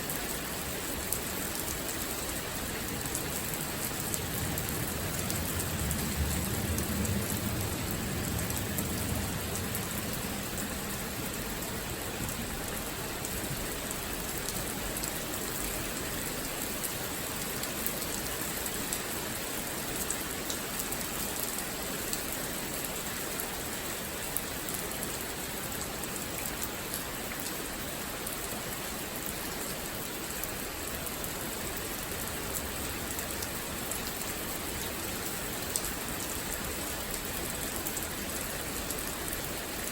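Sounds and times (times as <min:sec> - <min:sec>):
steady rain falling: 0:00.0 - 0:39.9
faint low rumble: 0:03.8 - 0:11.9.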